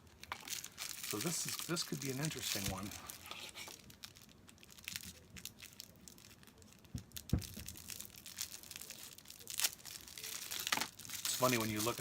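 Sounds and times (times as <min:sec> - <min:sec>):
packaging rustling: 0:00.0 - 0:12.0.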